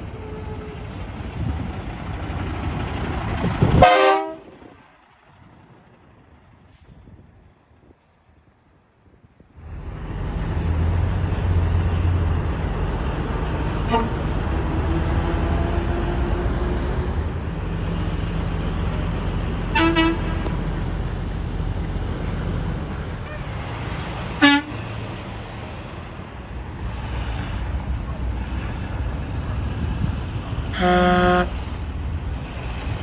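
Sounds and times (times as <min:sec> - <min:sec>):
distant traffic: 0:00.0 - 0:08.6, 0:09.6 - 0:33.0
diesel truck engine running: 0:00.0 - 0:33.0
wind rumble on microphone: 0:00.4 - 0:23.9, 0:25.7 - 0:33.0
truck horn toots: 0:03.6 - 0:04.8, 0:13.6 - 0:16.4, 0:19.6 - 0:20.7, 0:24.3 - 0:25.0, 0:30.6 - 0:31.8.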